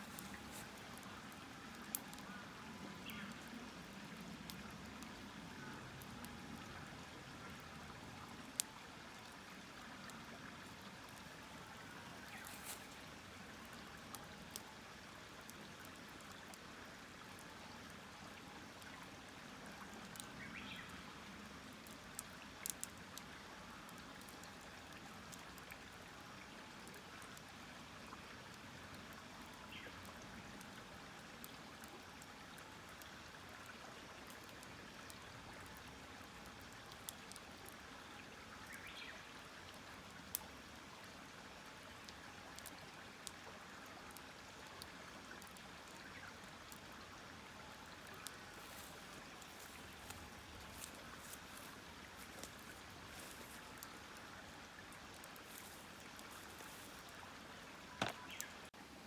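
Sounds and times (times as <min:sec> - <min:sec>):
campfire hissing: 0:00.0 - 0:02.7, 0:41.2 - 0:59.0
campfire crackles and pops: 0:00.0 - 0:37.9, 0:39.6 - 0:40.6, 0:41.8 - 0:58.7.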